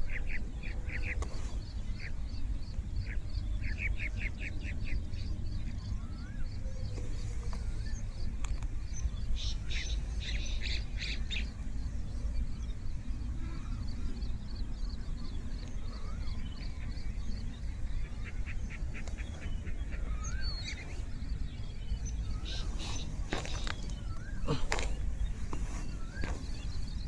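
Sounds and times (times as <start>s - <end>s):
birds chirping: 0.0s - 27.0s
steady low rumble: 0.0s - 27.0s
whistled bird notes: 19.6s - 27.0s.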